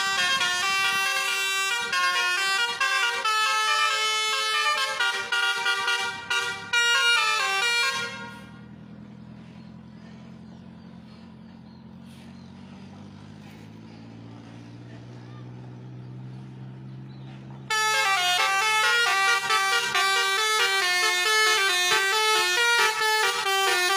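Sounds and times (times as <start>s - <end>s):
multi-tone bus air horn tune: 0.0s - 8.8s, 17.6s - 23.9s
bus engine running: 0.0s - 23.9s.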